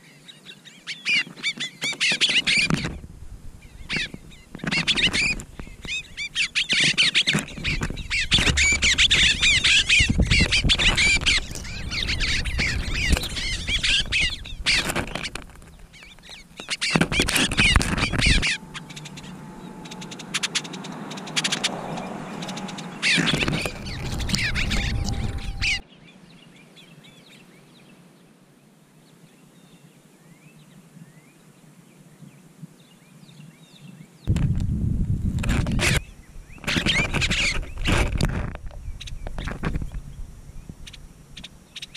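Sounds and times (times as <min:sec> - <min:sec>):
songbirds chirping: 0:00.0 - 0:34.3
low rumble: 0:17.2 - 0:25.8, 0:34.3 - 0:36.6.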